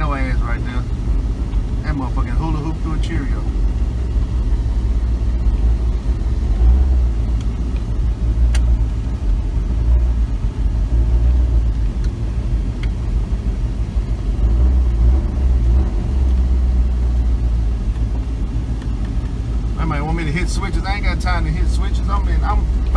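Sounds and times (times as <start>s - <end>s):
road noise: 0.0s - 22.9s
vehicle engine rumble: 0.0s - 22.9s.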